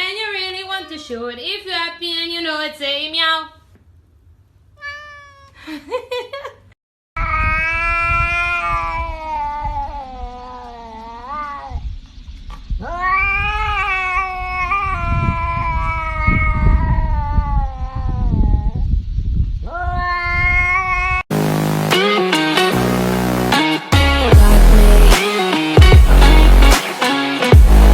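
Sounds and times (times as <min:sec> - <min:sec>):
cat yowling: 0:04.8 - 0:05.6, 0:07.2 - 0:11.8, 0:12.8 - 0:18.8, 0:19.6 - 0:21.2.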